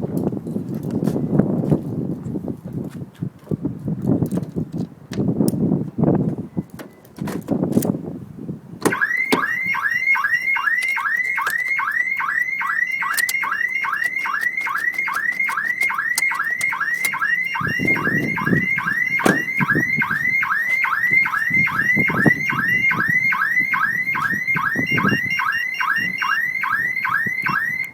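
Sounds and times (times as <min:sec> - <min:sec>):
car alarm siren whooping: 0:08.8 - 0:27.9
dull thumps: 0:13.1 - 0:20.9.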